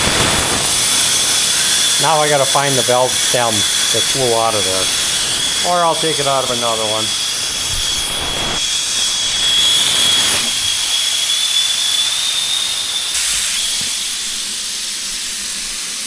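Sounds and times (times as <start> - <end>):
air hissing out of tire: 0.0 - 16.0
thin whistle: 7.0 - 15.4.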